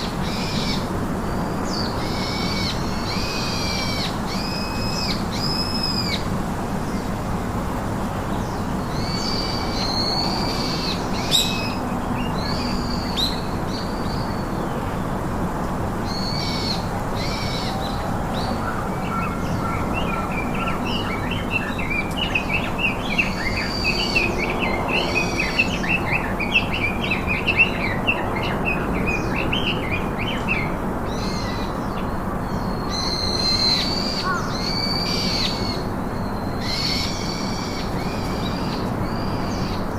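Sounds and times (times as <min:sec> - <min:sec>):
steady background hiss: 0:00.0 - 0:39.9
birds calling: 0:08.2 - 0:39.9
birds chattering rapidly: 0:16.1 - 0:39.9.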